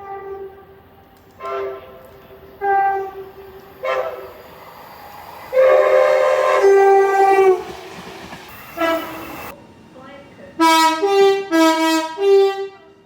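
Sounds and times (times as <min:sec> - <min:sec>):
train horn blasts: 0:00.0 - 0:04.5, 0:05.5 - 0:07.9, 0:08.8 - 0:09.5, 0:10.6 - 0:12.9.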